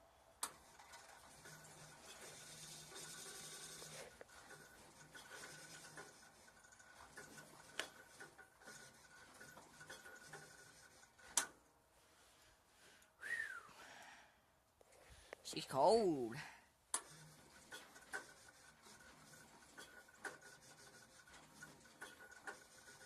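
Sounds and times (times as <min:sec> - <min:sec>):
faint rubbing noise: 0:01.0 - 0:11.3, 0:17.1 - 0:23.0.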